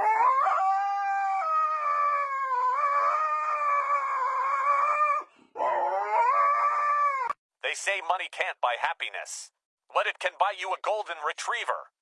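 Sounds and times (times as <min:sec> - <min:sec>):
dog howling: 0:00.0 - 0:07.4.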